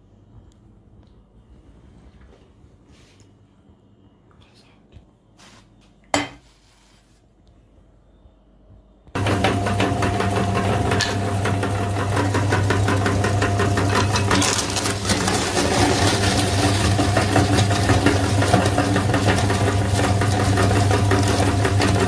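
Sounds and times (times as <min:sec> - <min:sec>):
electric grinder motor rattling: 0:09.2 - 0:22.0.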